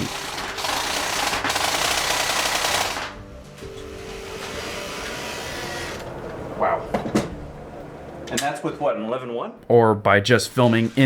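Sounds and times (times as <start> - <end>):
airsoft gun full-auto burst: 0.0 - 3.2.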